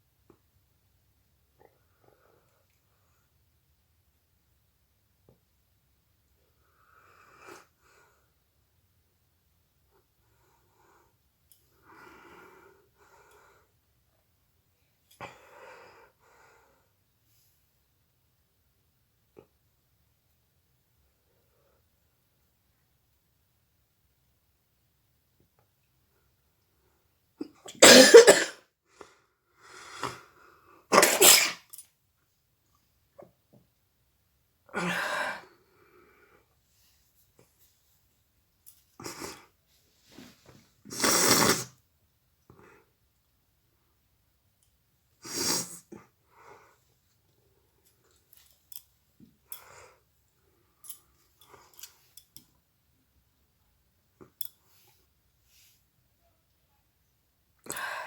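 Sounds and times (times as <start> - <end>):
woman blowing her nose: 27.7 - 28.6, 30.9 - 31.7, 40.9 - 41.8, 45.2 - 45.9
woman sniffing: 40.9 - 41.7, 45.2 - 46.0.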